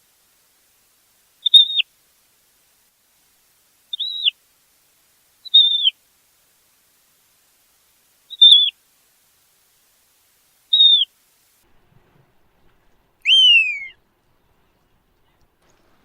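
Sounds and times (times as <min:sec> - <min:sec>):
shorebird whistled calls: 0:01.4 - 0:01.8, 0:03.9 - 0:04.4, 0:05.4 - 0:06.0, 0:08.3 - 0:08.8, 0:10.7 - 0:11.1, 0:13.2 - 0:14.0.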